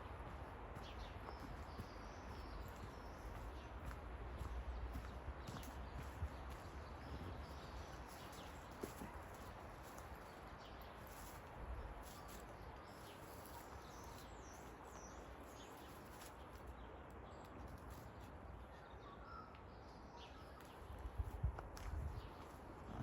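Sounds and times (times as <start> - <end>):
footsteps on path: 0.0 - 16.8, 20.6 - 23.0
bird calls and chirps: 12.0 - 21.3.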